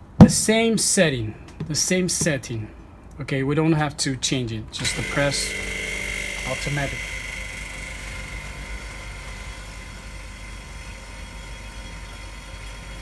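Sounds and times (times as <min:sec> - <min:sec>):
laminator machine whirring: 0:04.7 - 0:13.0
thin high whine: 0:04.8 - 0:13.0.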